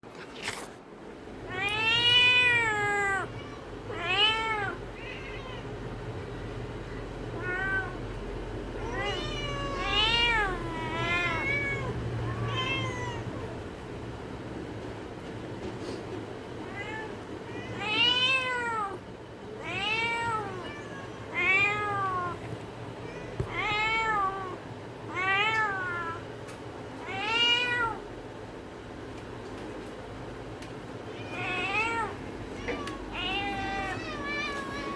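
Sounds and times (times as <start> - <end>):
cat meowing: 1.5 - 5.7, 7.4 - 8.0, 8.8 - 13.5, 19.6 - 22.4, 23.0 - 26.2, 27.0 - 28.0, 31.1 - 34.9.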